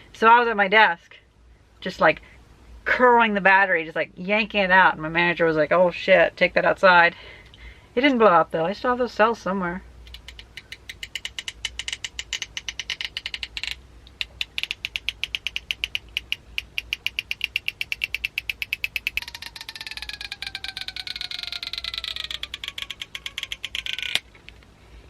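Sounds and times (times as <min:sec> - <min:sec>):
adhesive strip crackling: 0:10.1 - 0:24.6
glue snapping: 0:10.1 - 0:24.6.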